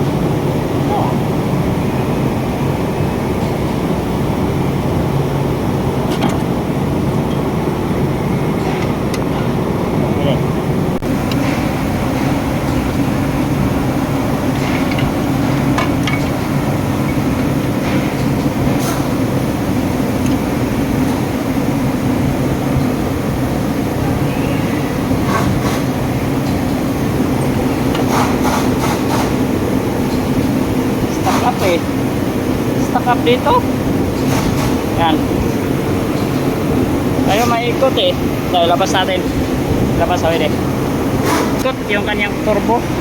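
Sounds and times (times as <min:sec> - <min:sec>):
low machine hum: 0:00.0 - 0:43.0
metal tools clicking and knocking: 0:15.8 - 0:16.5.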